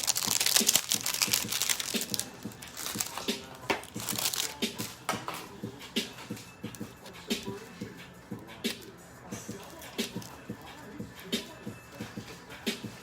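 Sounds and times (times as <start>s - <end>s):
plastic packaging crinkling: 0.0s - 5.0s, 9.6s - 10.4s.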